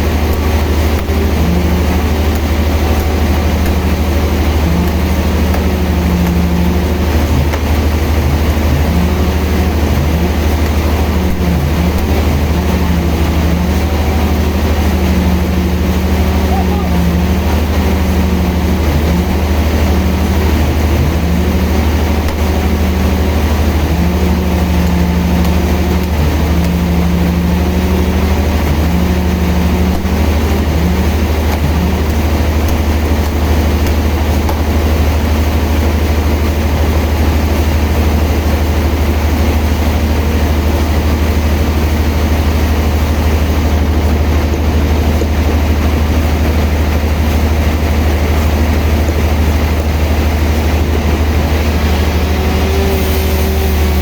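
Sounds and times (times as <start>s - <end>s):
higher machine tone: 0.0s - 37.4s
constant hiss: 0.0s - 54.0s
sawmill machinery droning: 0.0s - 54.0s.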